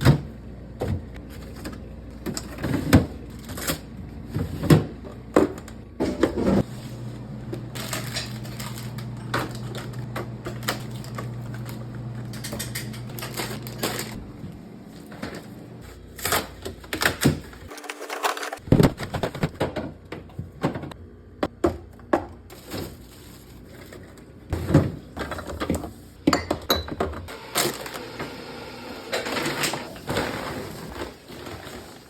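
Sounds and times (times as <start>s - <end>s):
packaging rustling: 13.1s - 14.2s.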